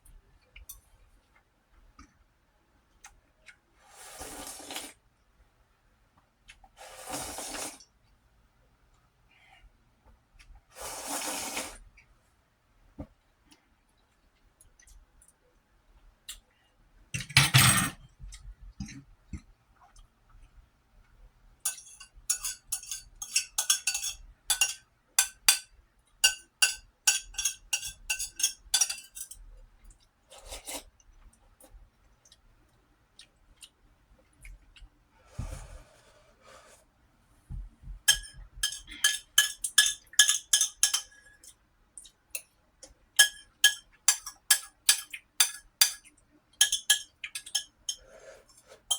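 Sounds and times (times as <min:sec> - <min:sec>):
utensil clinking against a bowl: 0:21.7 - 0:29.4, 0:38.1 - 0:41.6, 0:43.2 - 0:48.9.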